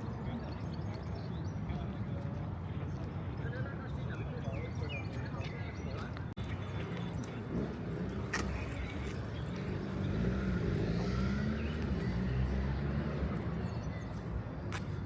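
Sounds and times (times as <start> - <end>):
vehicle passing on street: 6.4 - 15.0.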